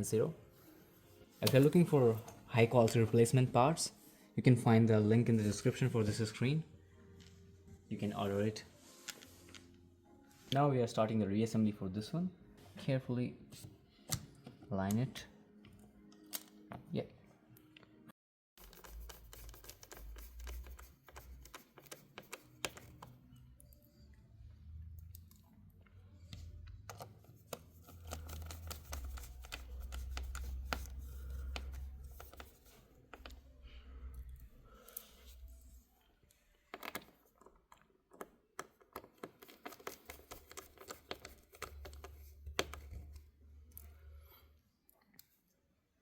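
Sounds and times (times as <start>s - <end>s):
laptop parts clicking and tapping: 18.6s - 23.2s, 26.4s - 33.4s, 36.7s - 43.3s.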